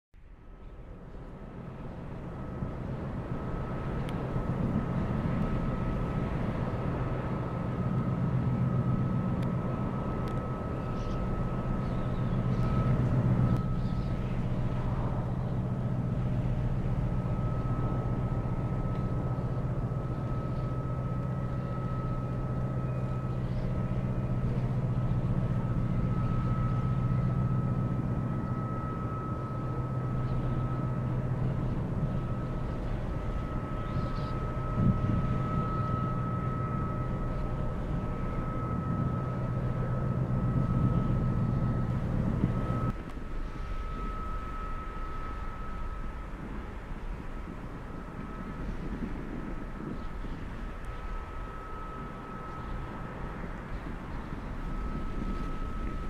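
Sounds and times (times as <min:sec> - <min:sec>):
ship engine droning: 0:00.2 - 0:56.0
thin steady whine: 0:00.2 - 0:56.0.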